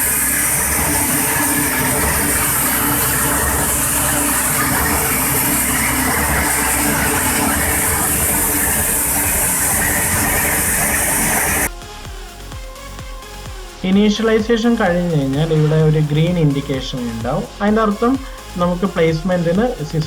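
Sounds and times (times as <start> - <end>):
machine whirring with hiss: 0.0 - 11.7.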